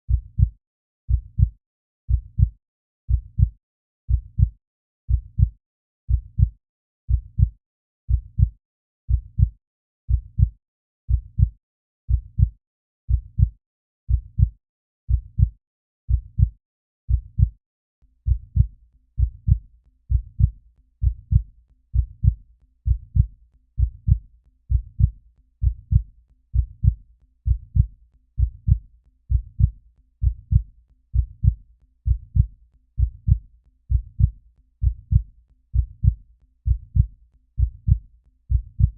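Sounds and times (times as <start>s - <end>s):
heartbeat thumps: 0.1s - 0.5s, 1.1s - 1.5s, 2.1s - 2.5s, 3.1s - 3.5s, 4.1s - 4.5s, 5.1s - 5.5s, 6.1s - 6.5s, 7.1s - 7.5s, 8.1s - 8.5s, 9.1s - 9.5s, 10.1s - 10.5s, 11.1s - 11.5s, 12.1s - 12.5s, 13.1s - 13.5s, 14.1s - 14.5s, 15.1s - 15.5s, 16.1s - 16.5s, 17.1s - 17.5s, 18.3s - 38.9s.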